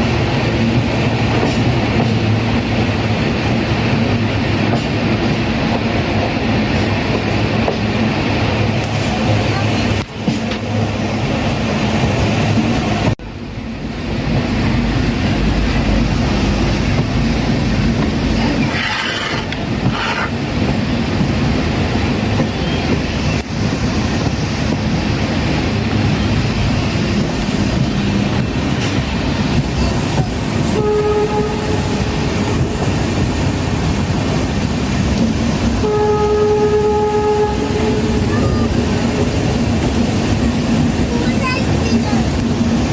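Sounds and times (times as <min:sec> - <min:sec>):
train wheels rumbling on track: 0:00.0 - 0:42.9
train horn blasts: 0:30.6 - 0:32.8, 0:35.8 - 0:38.6.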